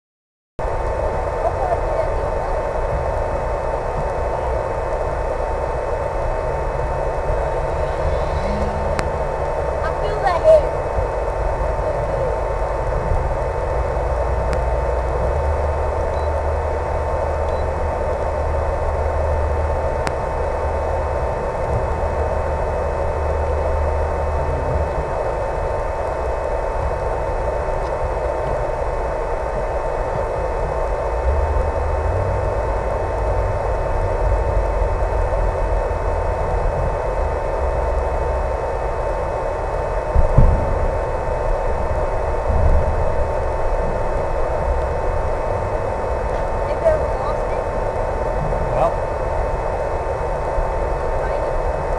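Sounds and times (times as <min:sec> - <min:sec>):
low rumbles: 0:00.6 - 0:51.9
model plane electric motor: 0:04.4 - 0:11.0.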